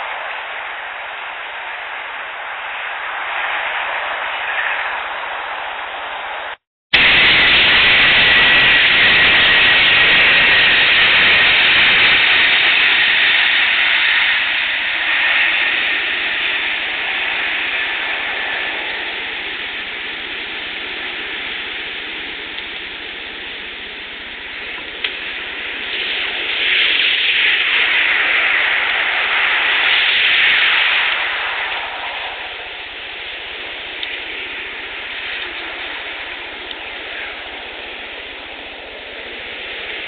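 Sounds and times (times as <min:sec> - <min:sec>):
faint steady whine: 0:00.0 - 0:40.0
plane passing overhead: 0:00.0 - 0:40.0.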